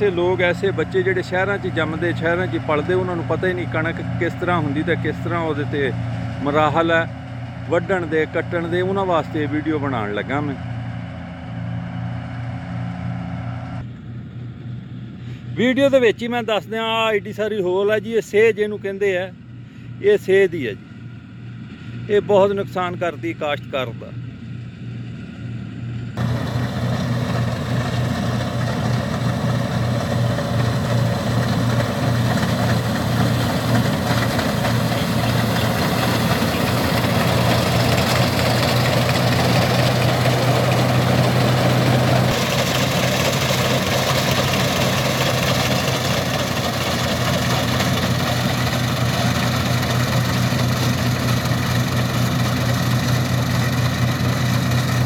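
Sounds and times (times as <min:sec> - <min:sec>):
combine harvester engine hum: 0:00.0 - 0:55.0
machine rushing noise: 0:26.2 - 0:52.4.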